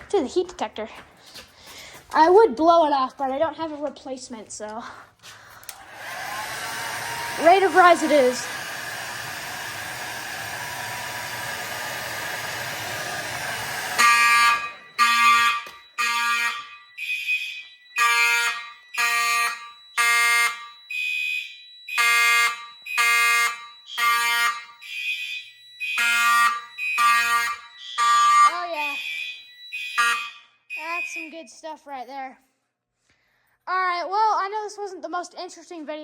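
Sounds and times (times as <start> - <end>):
hot-air blower running: 5.6 - 15.0
fire alarm horns pulsing: 7.3 - 31.5
faint steady high tone: 30.2 - 31.6.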